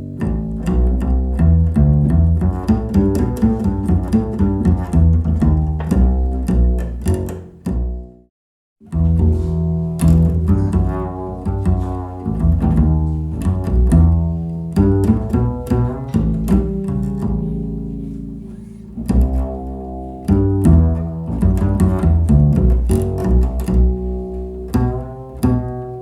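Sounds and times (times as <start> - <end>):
string music through a speaker: 8.8 - 26.0.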